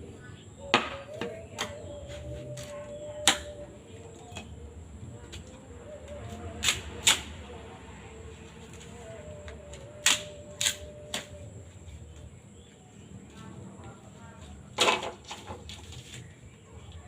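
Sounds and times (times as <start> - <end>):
sharp knocks on bamboo: 0.7 - 1.8
bamboo cracking: 10.0 - 11.3.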